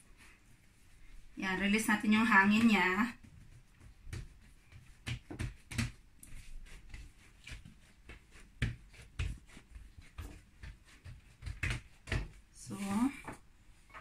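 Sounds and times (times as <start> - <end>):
hands slapping dough on table: 2.4 - 12.5.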